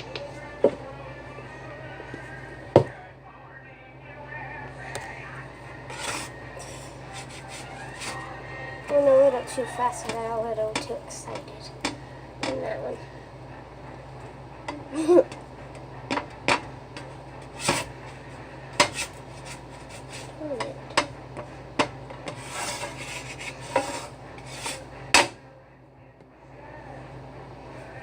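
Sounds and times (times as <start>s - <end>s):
steady low hum: 0.0s - 28.0s
utensil scraping pan: 5.9s - 12.8s, 16.1s - 25.4s.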